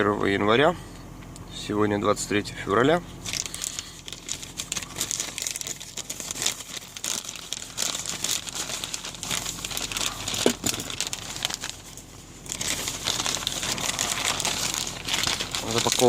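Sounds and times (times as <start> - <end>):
plastic packaging crinkling: 3.2 - 16.0.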